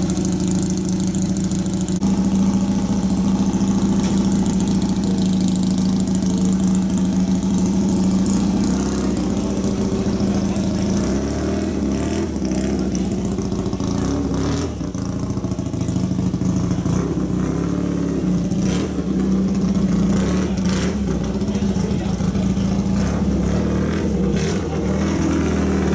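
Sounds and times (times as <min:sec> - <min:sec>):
race car engine fast idle: 0:00.0 - 0:25.9.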